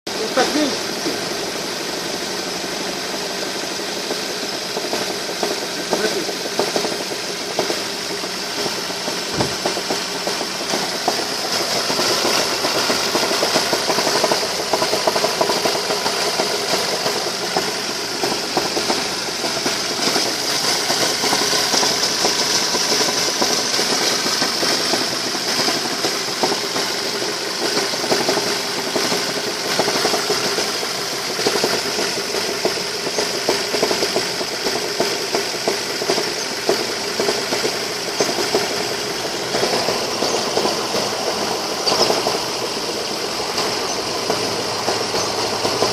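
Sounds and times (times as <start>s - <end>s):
car engine idling with knocking: 0.1s - 45.9s.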